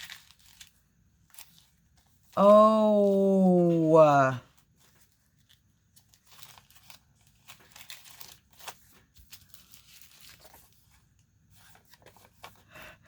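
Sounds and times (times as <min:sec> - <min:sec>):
packaging crinkling and rustling: 0:00.0 - 0:02.4, 0:04.5 - 0:12.7.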